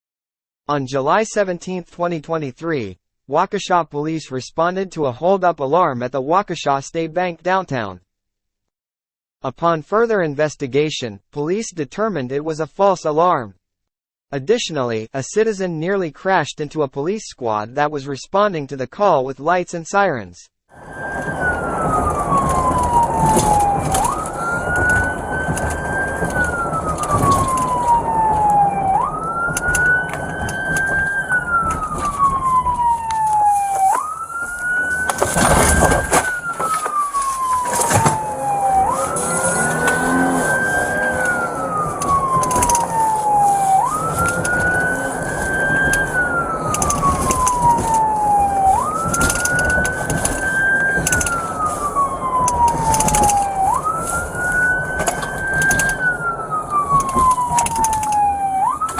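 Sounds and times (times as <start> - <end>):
police siren wailing: 20.7 - 58.9
car engine and road noise: 20.8 - 58.9.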